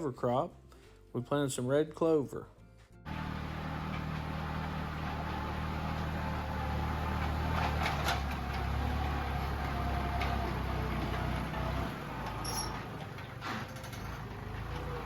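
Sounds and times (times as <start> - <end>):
farm machinery engine running: 3.1 - 15.0.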